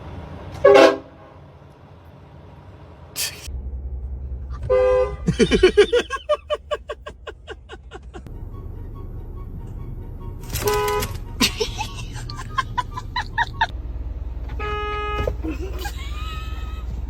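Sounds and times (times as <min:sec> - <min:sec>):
low rumble: 0:03.5 - 0:05.5
car horn honking: 0:04.6 - 0:05.9, 0:10.2 - 0:11.4, 0:14.5 - 0:15.4.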